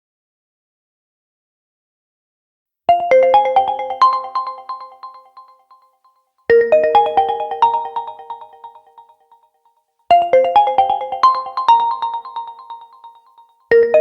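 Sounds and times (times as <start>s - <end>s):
phone ringtone melody: 3.0s - 5.6s, 6.5s - 9.3s, 10.1s - 14.0s.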